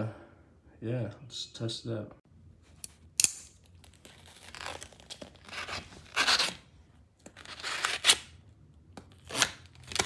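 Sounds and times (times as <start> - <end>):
knife cutting through material: 5.4 - 6.6, 7.4 - 8.3.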